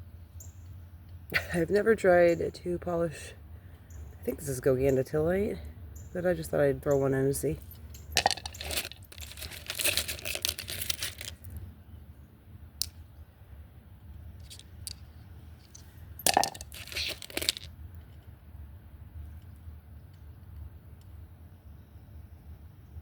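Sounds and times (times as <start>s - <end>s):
stones clattering and scraping: 7.7s - 11.5s, 14.4s - 17.7s.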